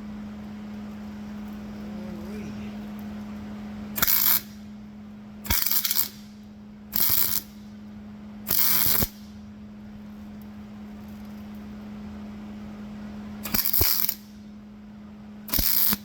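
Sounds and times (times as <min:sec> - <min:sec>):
steady low hum: 0:00.0 - 0:16.0
welding crackling bursts: 0:04.0 - 0:04.6, 0:05.5 - 0:06.4, 0:07.0 - 0:07.6, 0:08.5 - 0:09.2, 0:13.4 - 0:14.3, 0:15.5 - 0:16.0.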